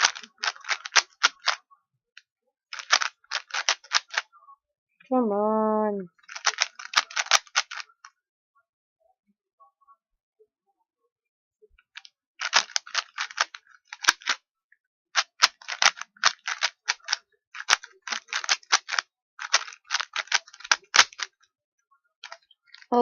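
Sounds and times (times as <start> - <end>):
puzzle cube plastic clicks: 0.0 - 1.6, 2.7 - 4.3, 6.2 - 8.0, 12.0 - 14.4, 15.2 - 21.4, 22.2 - 22.9.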